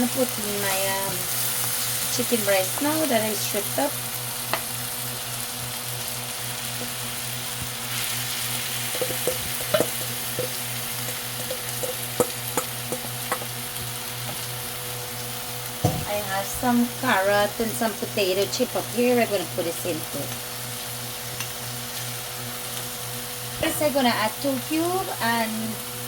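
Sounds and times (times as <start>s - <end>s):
chicken sizzling in hot oil: 0.0s - 26.0s
utensil clicking against pan: 8.8s - 13.6s.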